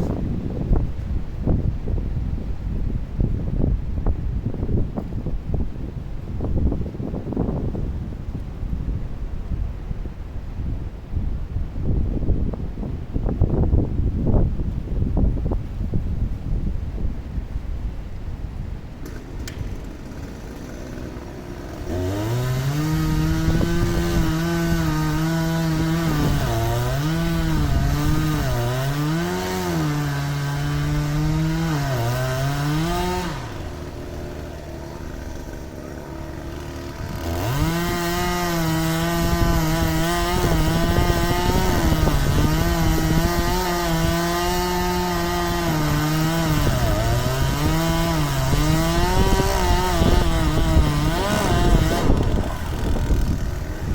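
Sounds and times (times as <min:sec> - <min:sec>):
chainsaw cutting wood: 0:00.0 - 0:01.0, 0:19.0 - 0:53.9.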